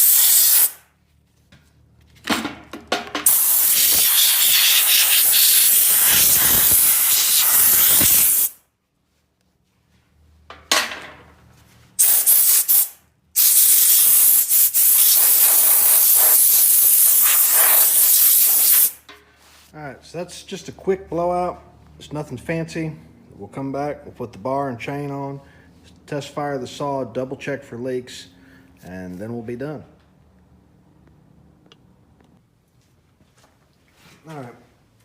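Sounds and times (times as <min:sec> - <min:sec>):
compressed air hissing: 0:00.0 - 0:00.8, 0:03.3 - 0:08.6, 0:12.0 - 0:19.0.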